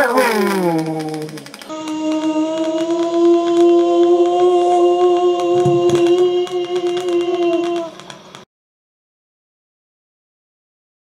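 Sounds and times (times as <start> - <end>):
droning tone with crackling clicks: 0.0 - 8.5.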